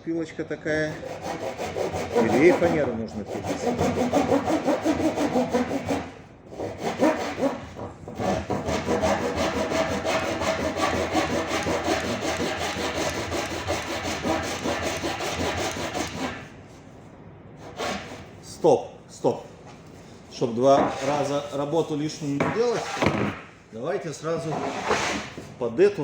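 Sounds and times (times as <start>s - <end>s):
hand saw cutting wood: 0.8s - 16.5s, 17.7s - 18.3s, 20.4s - 21.6s, 22.4s - 23.3s, 24.4s - 25.4s.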